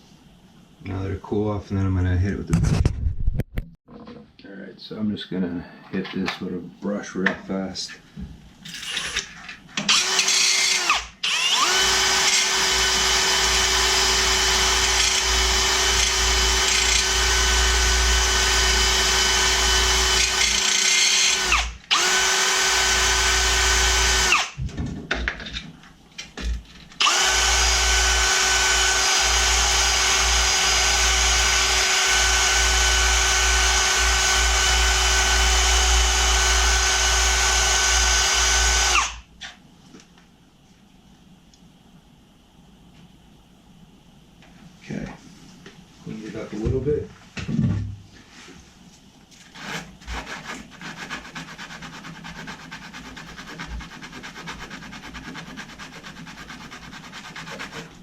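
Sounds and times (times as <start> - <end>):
electric drill with wire brush on metal: 8.7 - 24.6, 27.0 - 39.2.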